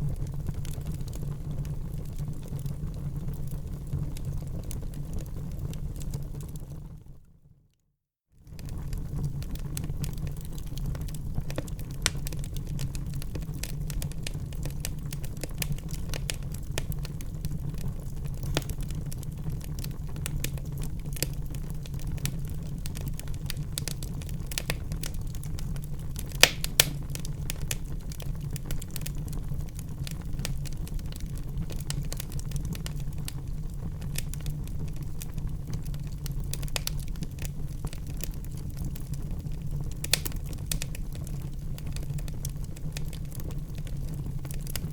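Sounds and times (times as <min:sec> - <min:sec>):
fire snaps and pops: 0:00.0 - 0:07.0, 0:08.4 - 0:44.9
wood fire crackling: 0:00.0 - 0:07.0, 0:08.4 - 0:44.9.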